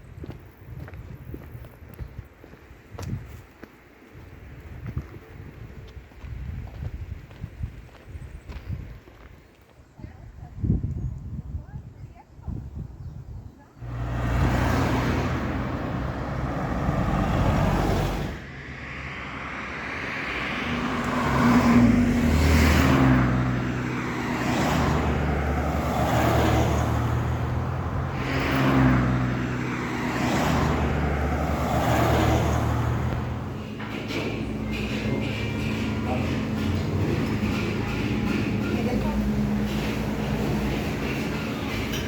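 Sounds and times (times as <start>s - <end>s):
vehicles passing on road: 0.0s - 11.6s, 13.2s - 42.0s.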